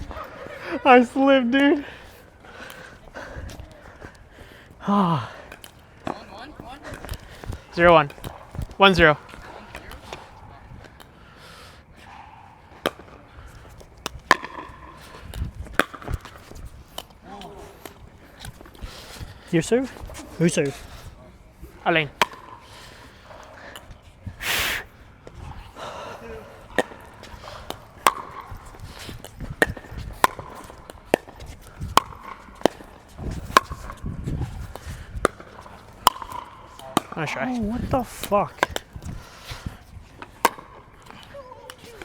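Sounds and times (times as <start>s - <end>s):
ping-pong ball hits: 14.3s - 14.9s, 22.2s - 22.6s, 26.7s - 28.6s, 32.0s - 32.9s, 35.2s - 37.2s, 40.4s - 40.8s.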